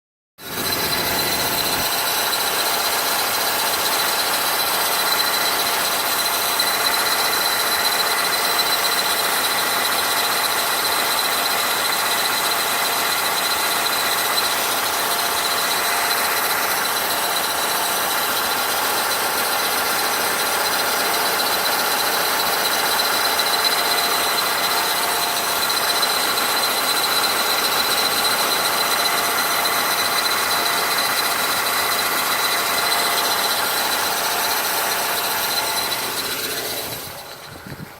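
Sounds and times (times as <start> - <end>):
car engine running: 0.4 - 37.9
high-pitched whistle: 21.1 - 37.6.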